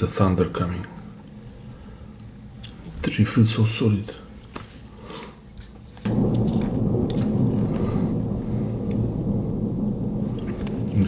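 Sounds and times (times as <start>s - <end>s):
thunder rumbling: 6.0s - 11.0s.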